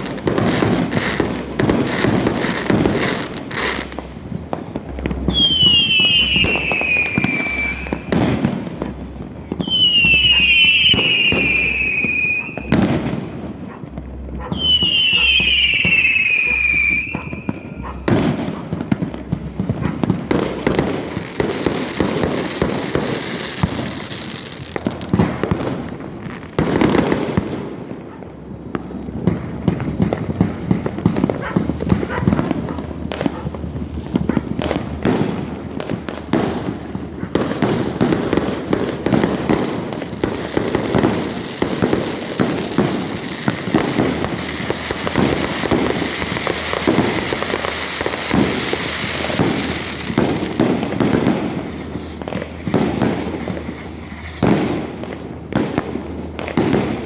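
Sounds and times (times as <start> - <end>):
fireworks popping and banging: 0.0 - 57.0
whistling firework: 0.0 - 57.0.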